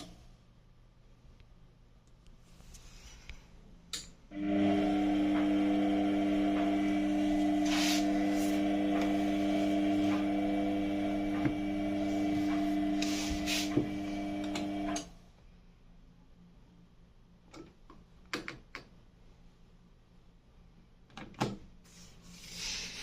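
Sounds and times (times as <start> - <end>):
washing machine humming: 4.3 - 15.2.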